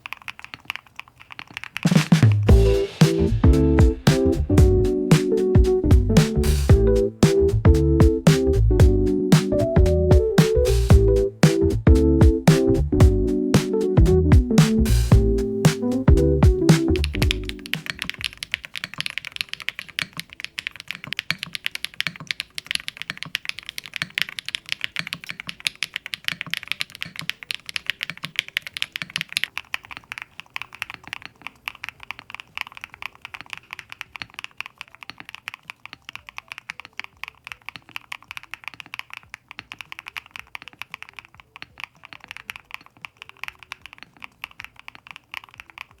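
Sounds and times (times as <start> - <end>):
typing on mechanical keyboard: 0.0 - 2.5, 15.7 - 46.0.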